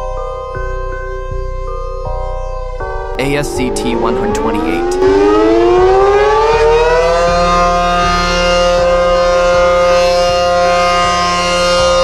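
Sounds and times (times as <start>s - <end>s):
outdoor warning siren wailing: 3.7s - 12.0s.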